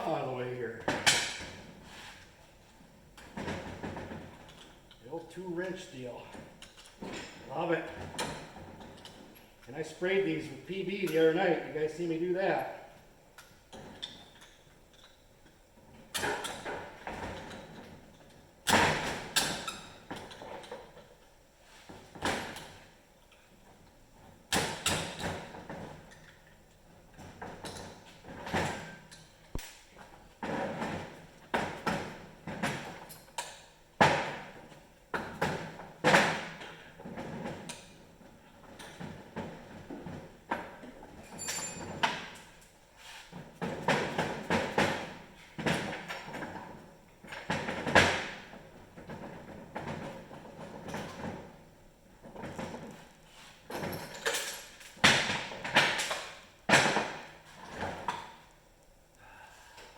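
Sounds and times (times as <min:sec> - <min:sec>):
tools and metal parts clanking: 0:03.2 - 0:09.7, 0:13.4 - 0:21.3, 0:24.5 - 0:48.4, 0:52.2 - 0:58.4.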